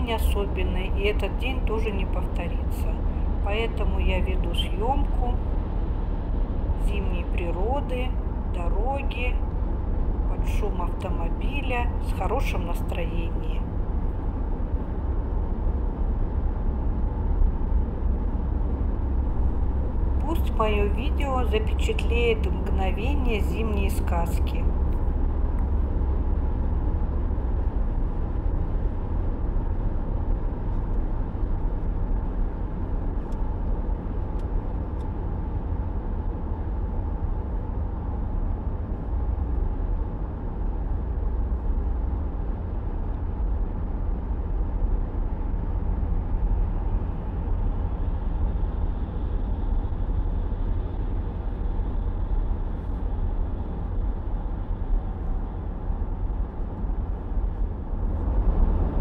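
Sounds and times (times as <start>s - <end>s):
car engine and road noise: 0.0s - 59.0s
faint high whine: 0.0s - 59.0s.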